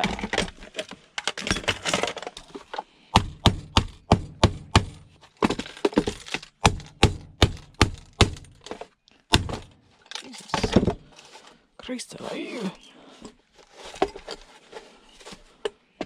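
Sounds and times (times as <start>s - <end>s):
handling and scraping: 0.0s - 3.1s, 5.0s - 6.6s, 8.4s - 16.0s
sharp blows on speaker cabinet: 3.2s - 5.0s.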